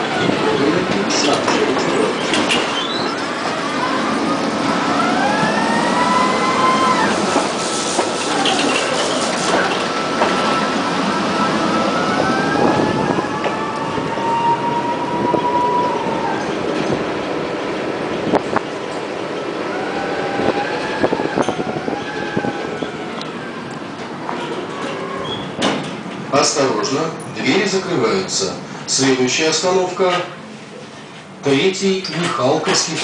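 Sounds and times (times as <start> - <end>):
tram wheels squealing: 0.0 - 17.0, 19.6 - 26.0
tram rolling rumble: 0.0 - 33.0.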